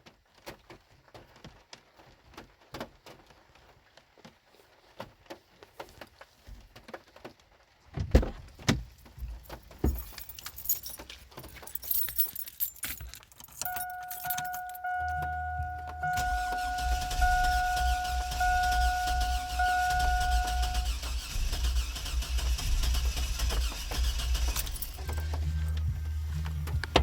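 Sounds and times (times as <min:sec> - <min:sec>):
keys jangling: 0:09.3 - 0:20.9, 0:23.5 - 0:25.8
car warning chime: 0:13.6 - 0:22.0
low engine rumble: 0:13.6 - 0:27.0.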